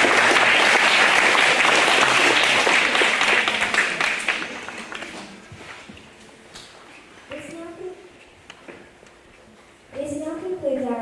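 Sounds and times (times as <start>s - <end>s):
children applauding: 0.0s - 5.3s.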